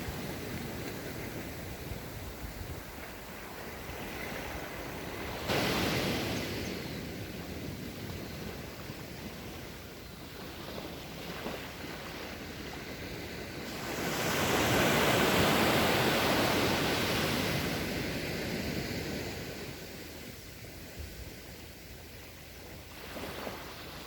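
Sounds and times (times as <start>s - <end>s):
sea waves washing onto shore: 0.0s - 24.0s.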